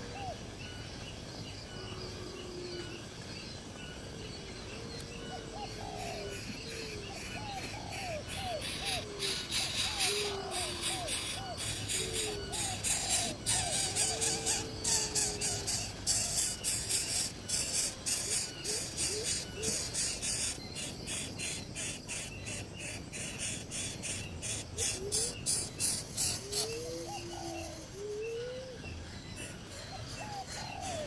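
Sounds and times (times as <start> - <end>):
high raspy animal chirps: 7.2 - 20.6.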